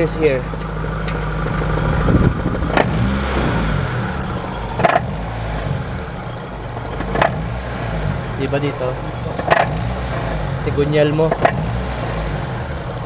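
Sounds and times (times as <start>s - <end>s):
car engine revving: 0.0s - 13.0s
sharp engine knocks: 2.0s - 10.5s, 11.1s - 13.0s.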